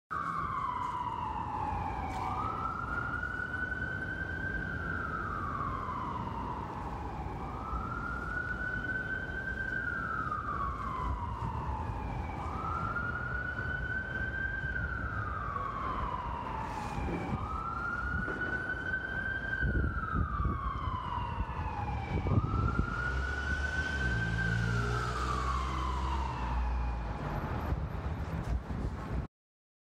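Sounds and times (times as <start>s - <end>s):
police siren wailing: 0.1s - 28.0s
city traffic rumble: 0.1s - 29.3s
heavy engine: 15.6s - 19.2s, 22.2s - 29.2s.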